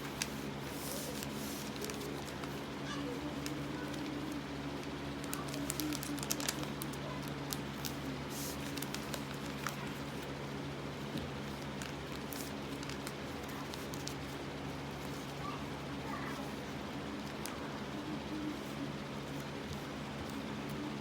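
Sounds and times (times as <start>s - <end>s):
paper crackling and rustling: 0.0s - 21.0s
steady low hum: 0.0s - 21.0s.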